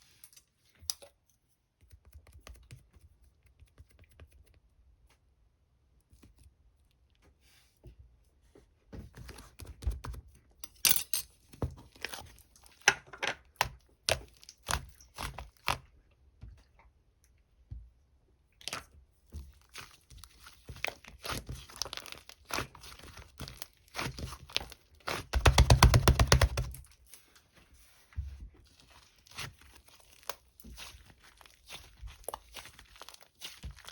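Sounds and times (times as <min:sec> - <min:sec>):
slime crackling and popping: 0:19.6 - 0:27.0, 0:28.8 - 0:33.9.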